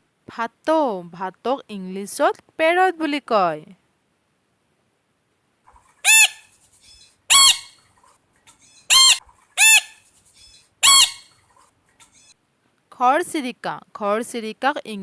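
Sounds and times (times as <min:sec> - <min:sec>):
parrot squawking: 0:05.7 - 0:12.4.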